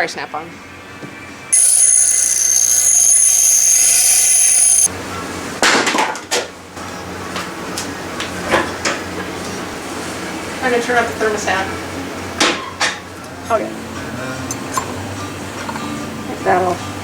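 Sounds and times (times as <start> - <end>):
power grinder whining: 1.6 - 4.9.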